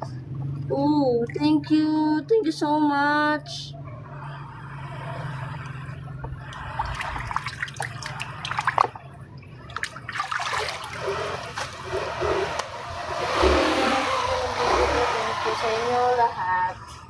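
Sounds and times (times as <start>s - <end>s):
water trickling and splashing: 6.4s - 12.8s.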